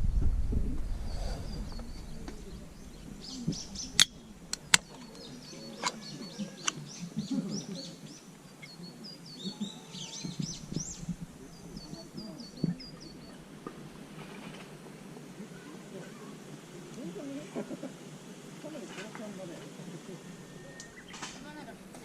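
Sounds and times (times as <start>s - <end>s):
low rumble: 0.0s - 4.7s
small birds chirping: 0.7s - 22.0s
sharp clicks: 3.8s - 6.0s.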